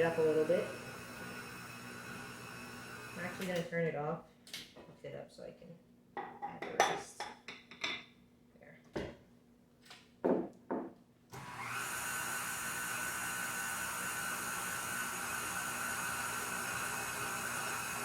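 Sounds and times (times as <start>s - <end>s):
stand mixer motor whining: 0.0s - 3.5s, 11.4s - 18.0s.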